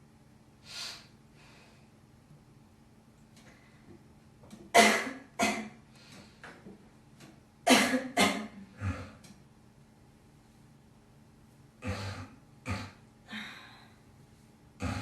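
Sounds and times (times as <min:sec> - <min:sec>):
girl coughing: 0:04.8 - 0:05.7, 0:07.7 - 0:08.6.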